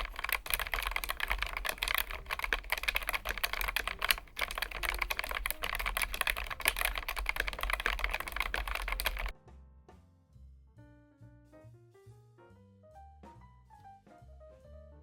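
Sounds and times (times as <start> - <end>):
fast typing on keyboard: 0.0 - 9.3
quiet piano background music: 9.3 - 15.0.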